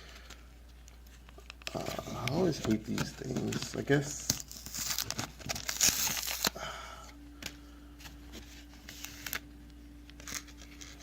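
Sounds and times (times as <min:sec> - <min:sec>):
foil wrapper crinkling: 0:01.4 - 0:06.6.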